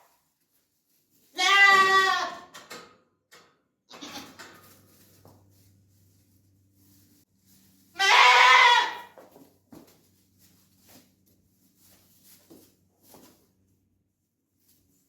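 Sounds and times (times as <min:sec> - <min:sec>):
goat bleating: 0:01.3 - 0:02.5, 0:03.9 - 0:04.4, 0:07.9 - 0:09.2.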